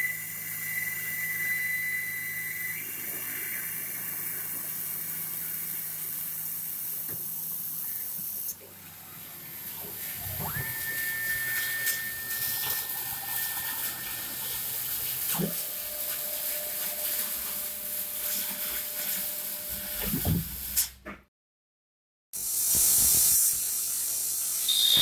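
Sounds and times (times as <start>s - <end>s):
high machine whine: 0.0s - 18.1s, 24.0s - 25.0s
lathe cutting steel: 9.0s - 17.4s, 24.0s - 25.0s
steady hiss: 22.4s - 25.0s.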